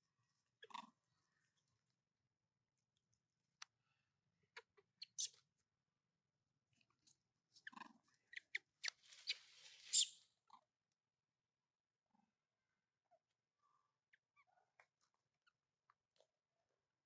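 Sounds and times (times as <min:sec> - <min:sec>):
crinkly rustle: 0:09.0 - 0:09.9.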